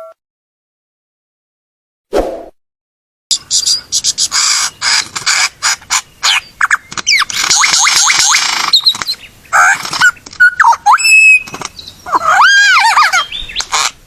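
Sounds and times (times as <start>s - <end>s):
bird singing: 3.3s - 14.0s.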